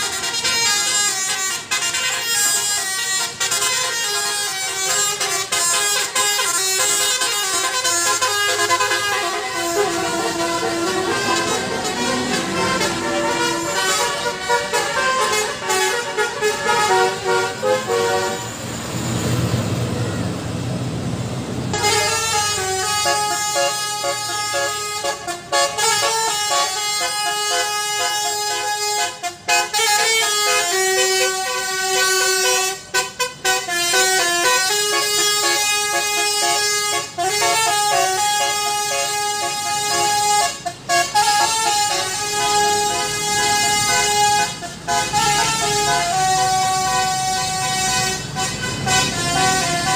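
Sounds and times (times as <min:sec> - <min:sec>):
musical bus horn tune: 0:00.0 - 0:18.8, 0:21.7 - 0:49.9
rushing noise: 0:07.7 - 0:23.0.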